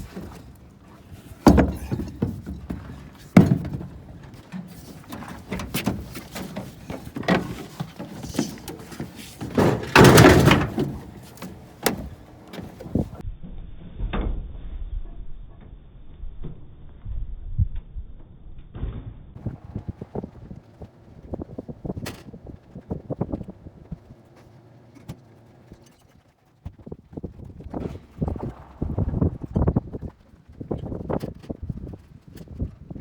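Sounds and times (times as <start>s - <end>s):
hard objects knocking and clattering: 0.0s - 13.2s.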